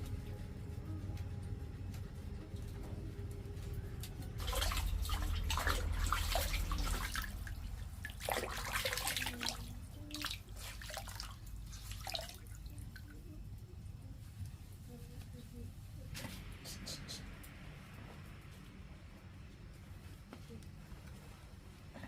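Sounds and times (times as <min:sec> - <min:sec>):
water splashing and pouring: 0:04.4 - 0:13.1.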